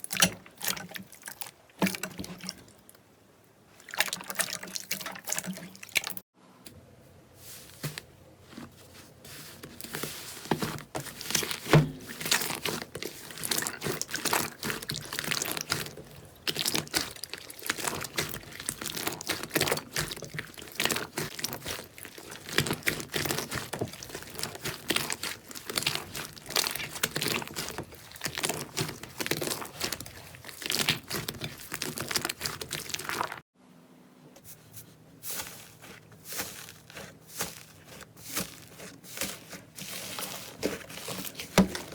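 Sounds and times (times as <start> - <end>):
slime crackling and popping: 11.2 - 33.4.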